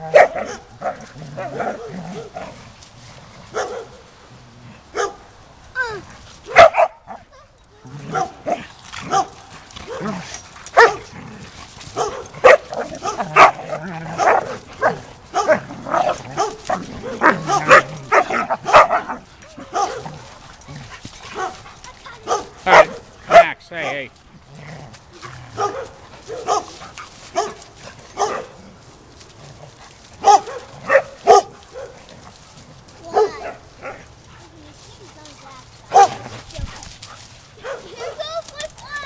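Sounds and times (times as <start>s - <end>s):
dog barks: 0.0s - 2.5s, 3.5s - 4.0s, 4.9s - 5.3s, 6.5s - 7.3s, 7.9s - 11.1s, 11.9s - 20.3s, 21.2s - 24.1s, 25.5s - 28.6s, 30.2s - 32.1s, 33.0s - 34.1s, 35.8s - 36.8s, 37.6s - 38.3s
dogs vocalising while play-fighting: 0.0s - 39.0s.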